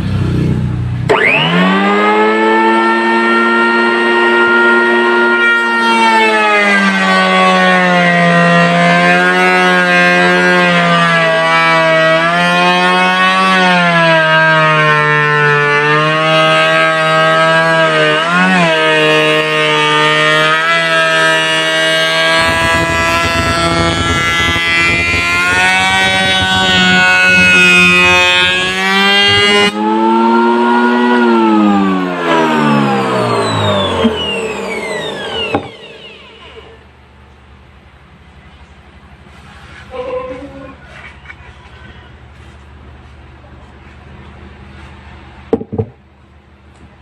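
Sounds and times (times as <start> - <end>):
wood planer motor hum: 1.1 - 37.5
low rough rumble: 22.1 - 29.7.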